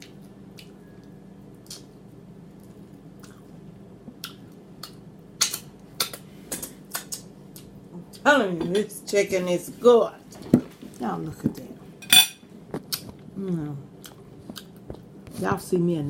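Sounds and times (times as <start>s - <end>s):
wet chewing and lip-smacking: 0.0s - 7.8s, 12.7s - 13.3s, 14.0s - 15.1s
faint steady hum: 0.0s - 16.0s.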